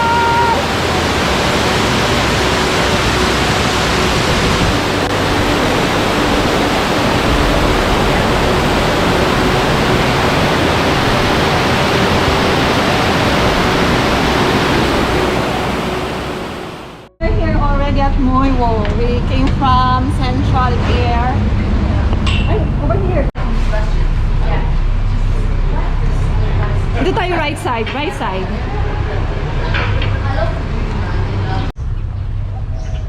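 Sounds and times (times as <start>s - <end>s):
waterfall rushing: 0.0s - 17.1s.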